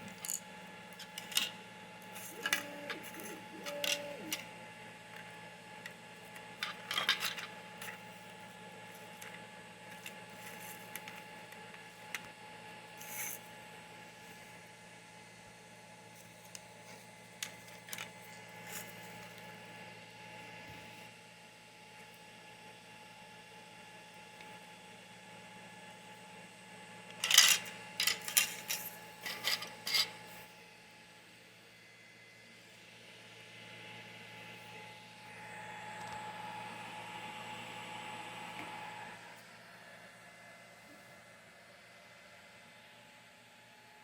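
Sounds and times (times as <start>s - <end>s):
steady hum: 0.0s - 21.0s.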